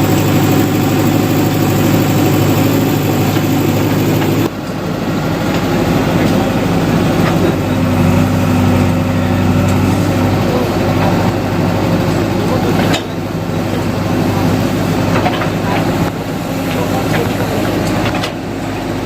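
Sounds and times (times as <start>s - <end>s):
steady higher hum: 0.0s - 15.0s
diesel engine running: 0.0s - 19.0s.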